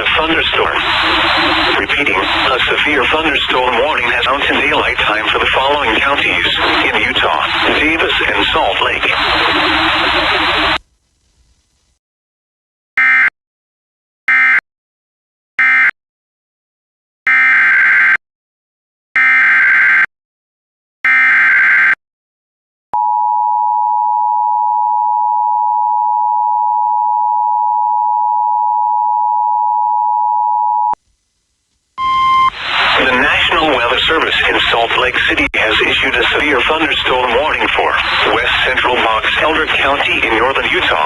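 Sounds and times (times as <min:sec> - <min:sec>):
screeching data bursts: 0:00.0 - 0:04.4, 0:05.4 - 0:10.8
two-tone attention signal: 0:32.0 - 0:32.5.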